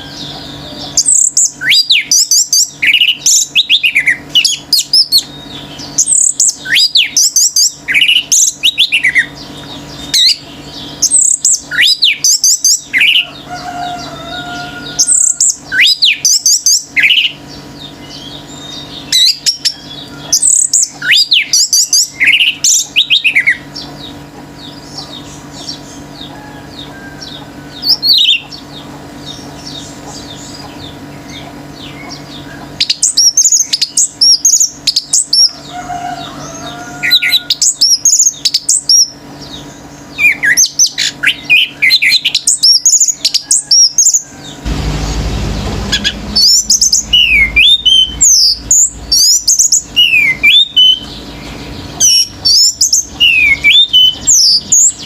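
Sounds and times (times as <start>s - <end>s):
other birds chirping: 0.0s - 55.0s
thrush singing: 44.2s - 55.0s.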